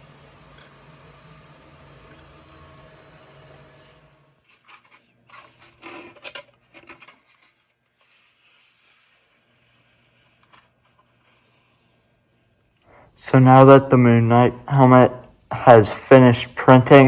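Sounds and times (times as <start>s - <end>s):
low machine hum: 0.0s - 4.4s, 11.3s - 17.0s
hard object rubbing and scraping: 3.7s - 11.5s.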